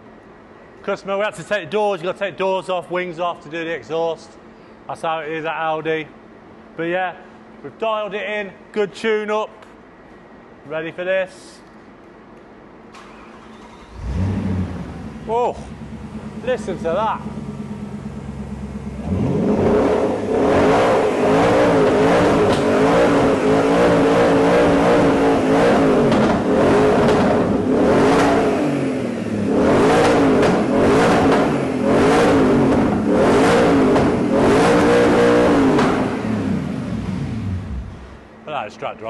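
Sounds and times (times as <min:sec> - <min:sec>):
car engine revving: 0:13.0 - 0:38.3.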